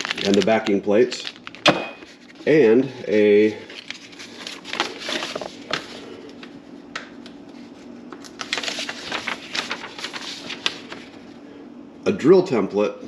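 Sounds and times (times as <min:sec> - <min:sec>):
paper rustling and crinkling: 0:00.0 - 0:06.6, 0:07.5 - 0:11.4.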